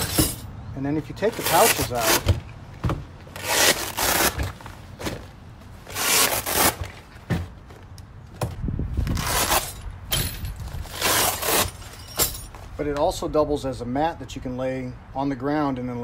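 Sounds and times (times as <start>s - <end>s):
fabric pouches ripping off: 1.3s - 2.3s, 3.3s - 7.1s, 9.0s - 9.7s, 10.8s - 11.8s.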